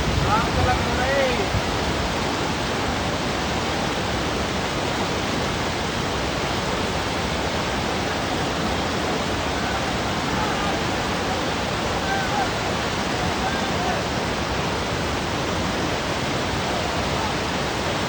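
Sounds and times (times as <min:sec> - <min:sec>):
whitewater rapids rushing: 0:00.0 - 0:18.0
faint voices: 0:08.0 - 0:14.7.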